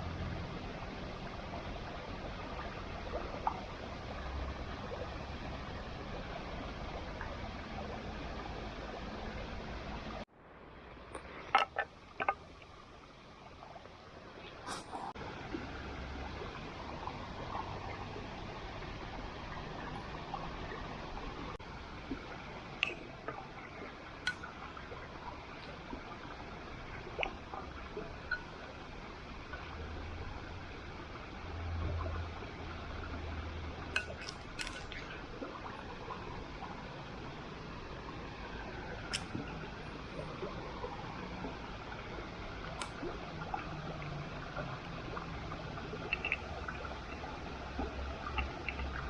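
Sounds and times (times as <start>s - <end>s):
campfire hiss and crackles: 10.8s - 49.0s.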